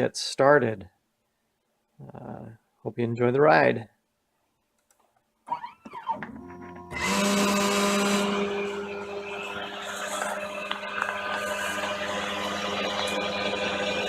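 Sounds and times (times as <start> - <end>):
rotary tool running: 6.4 - 14.0.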